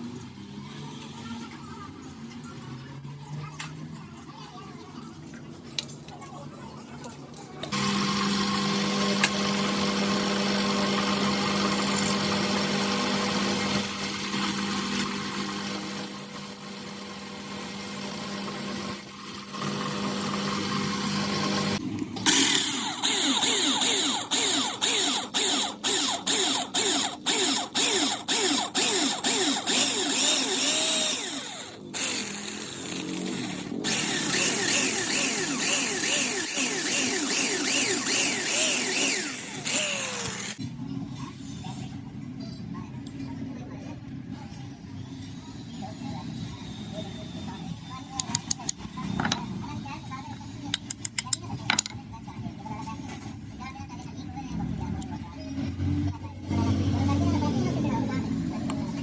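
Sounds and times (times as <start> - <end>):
rhythmic machining sound: 7.7 - 40.6
motor hum: 7.7 - 40.7
steady machine noise: 19.0 - 40.6.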